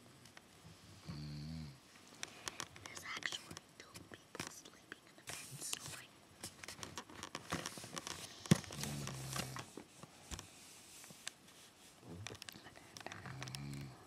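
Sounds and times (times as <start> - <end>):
woman snoring: 1.0 - 1.8, 13.2 - 14.0
small clicks and rustles: 2.0 - 14.0.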